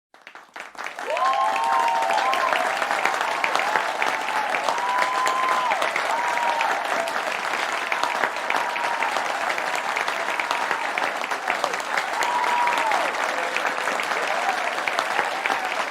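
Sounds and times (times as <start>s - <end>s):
crowd applauding and cheering: 0.1s - 15.9s
long whoops: 1.0s - 7.2s, 12.0s - 13.1s.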